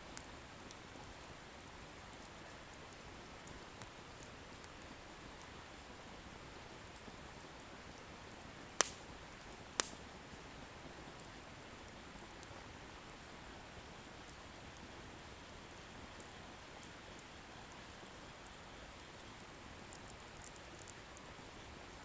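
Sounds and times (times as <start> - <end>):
bonfire hissing and crackling: 0.1 - 22.0
firewood popping: 8.8 - 10.2.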